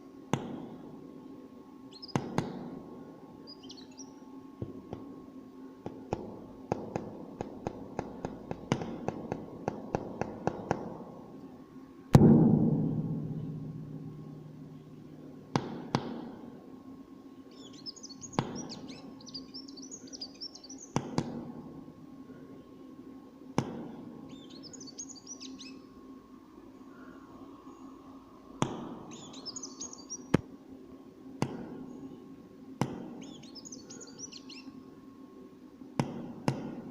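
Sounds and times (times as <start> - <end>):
steady low hum: 0.0 - 36.9
small bird twittering: 1.9 - 2.2, 3.4 - 4.2, 17.5 - 21.0, 24.3 - 25.8, 29.1 - 30.3, 33.2 - 34.8
loud knock with ringing decay: 12.2 - 16.5.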